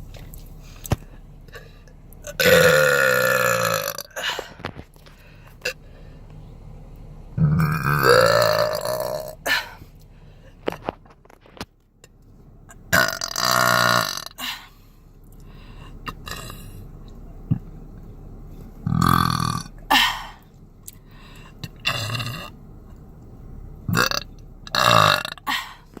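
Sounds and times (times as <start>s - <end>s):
woman burping: 2.2s - 4.6s, 7.4s - 9.8s, 12.9s - 14.7s, 16.1s - 16.6s, 18.9s - 20.4s, 21.8s - 22.5s, 23.9s - 25.8s.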